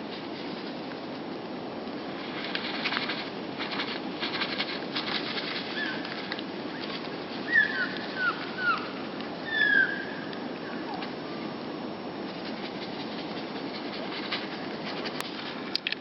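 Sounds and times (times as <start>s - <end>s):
rattle of flutters: 0.1s - 9.5s, 12.2s - 16.0s
songbird call notes: 5.7s - 6.1s, 6.7s - 11.1s.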